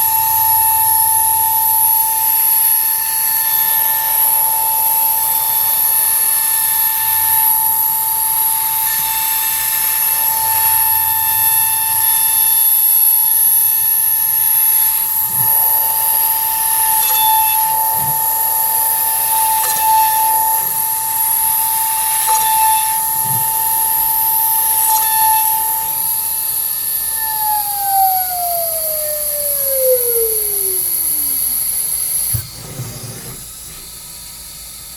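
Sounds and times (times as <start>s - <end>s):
router spindle whine: 0.0s - 34.9s
clicks: 27.1s - 33.7s.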